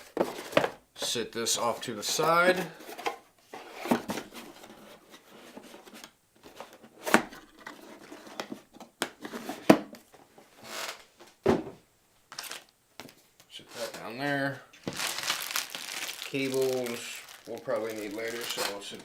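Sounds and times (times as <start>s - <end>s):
packaging rustle: 12.3s - 13.2s, 14.8s - 19.0s.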